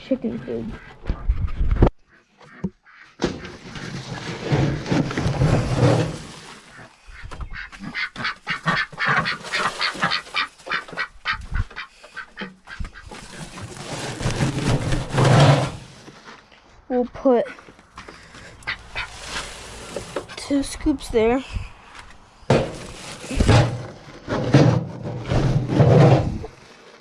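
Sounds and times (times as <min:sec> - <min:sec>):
ducks quacking: 0:00.1 - 0:04.0, 0:06.4 - 0:13.3, 0:17.3 - 0:19.5.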